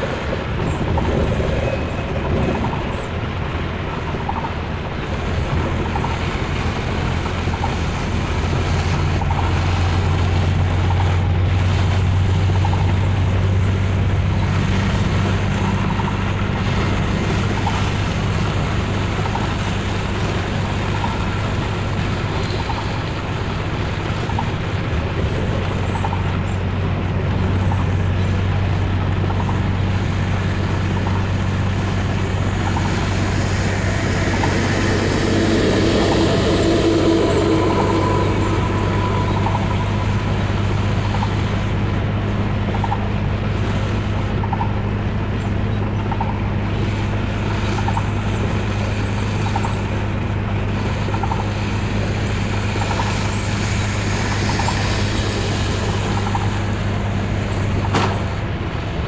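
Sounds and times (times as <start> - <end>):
vehicle engine and tyres drone: 0.0 - 59.0
rain and road spray hiss: 48.2 - 59.0.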